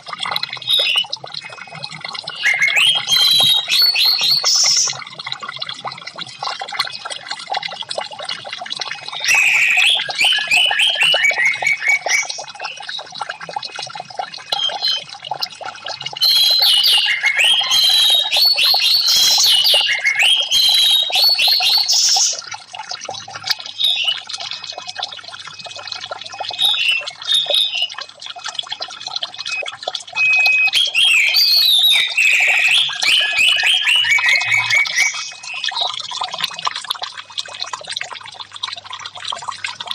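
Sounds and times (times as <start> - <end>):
trickling water: 0.0 - 39.9
bird singing whistled notes: 2.3 - 4.9, 9.2 - 12.8, 26.5 - 28.0, 30.2 - 35.6.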